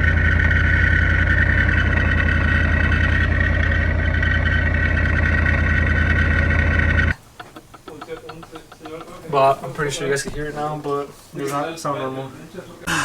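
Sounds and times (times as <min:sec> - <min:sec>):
car engine idling: 0:00.0 - 0:07.2
high-pitched supercharger whine: 0:00.0 - 0:07.2.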